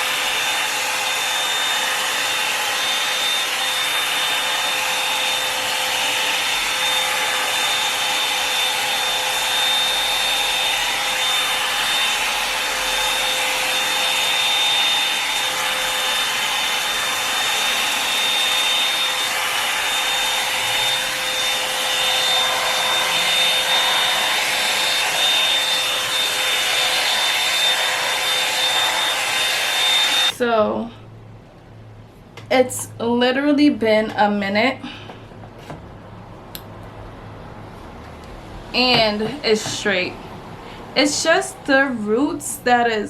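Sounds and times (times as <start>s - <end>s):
hot-air brush blowing with motor whine: 0.0s - 30.5s.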